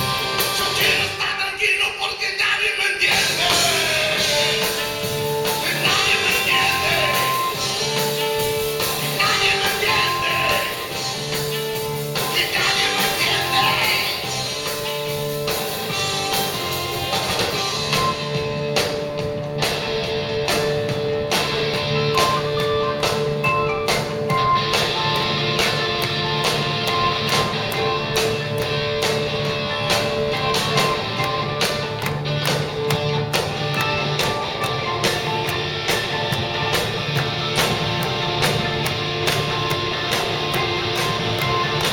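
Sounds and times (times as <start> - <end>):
drum kit beat: 0.0 - 1.4, 3.0 - 41.9
electric guitar sustained notes: 3.2 - 41.9.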